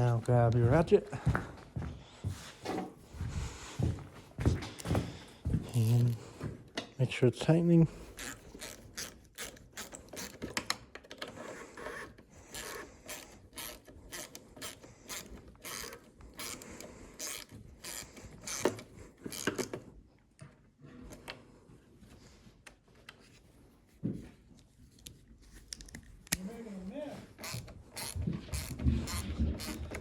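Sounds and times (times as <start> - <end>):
ratchet wrench clicking: 8.2 - 10.4, 12.5 - 16.6, 17.2 - 19.7, 27.4 - 30.0.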